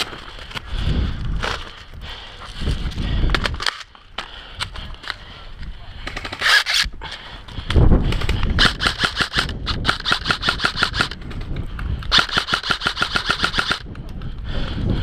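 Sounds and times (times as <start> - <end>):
airsoft rifle automatic bursts: 8.6 - 11.2, 12.1 - 13.8.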